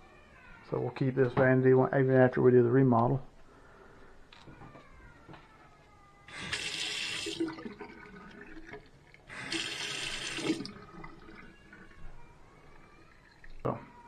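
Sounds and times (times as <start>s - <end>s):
faucet water running into sink: 6.3s - 11.6s.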